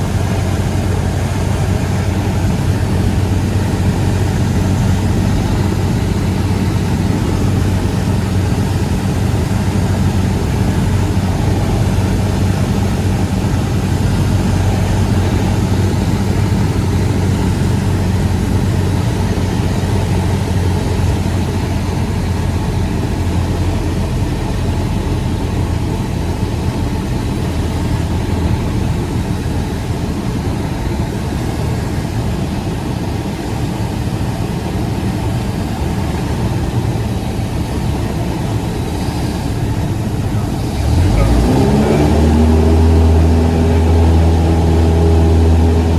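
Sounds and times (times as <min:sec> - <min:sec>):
light aircraft engine drone: 0:00.0 - 0:45.9.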